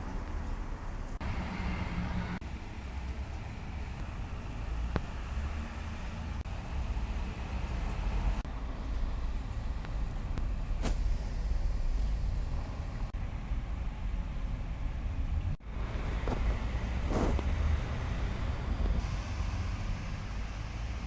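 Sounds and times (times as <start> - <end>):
low background rumble: 8.5 - 19.0.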